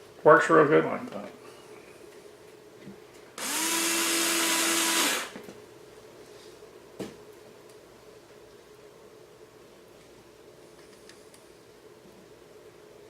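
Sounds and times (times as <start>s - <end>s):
power tool motor whine: 3.4s - 5.4s.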